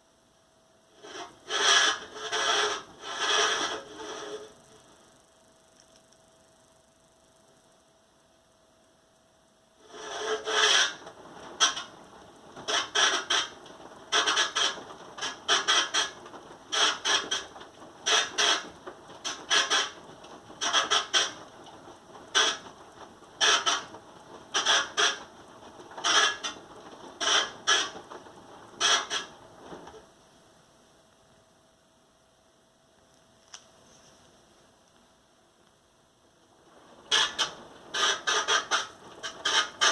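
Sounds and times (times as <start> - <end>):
appliance rhythmic rubbing scraping: 1.0 - 4.7, 9.8 - 30.0, 36.6 - 39.9.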